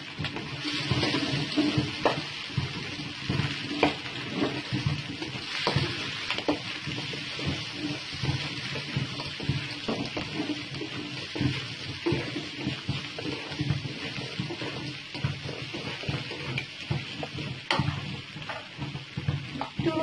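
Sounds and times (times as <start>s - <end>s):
food sizzling in a pan: 0.0s - 20.0s
spatula scraping and clinking pan: 0.1s - 20.0s.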